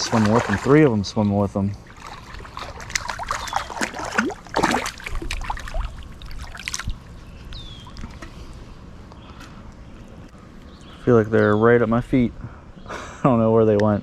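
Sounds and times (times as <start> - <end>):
fish splashing in water: 0.0 - 1.0, 1.8 - 7.0.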